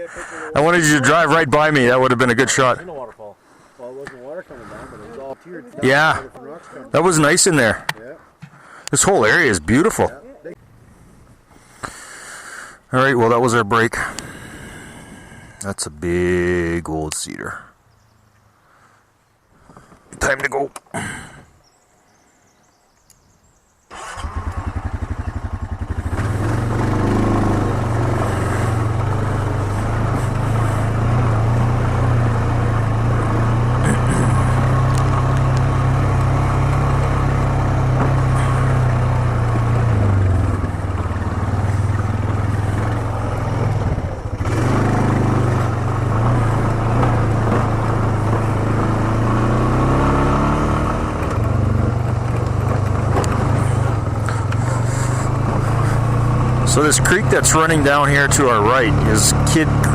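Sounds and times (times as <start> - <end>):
quad bike engine running: 24.1 - 59.9.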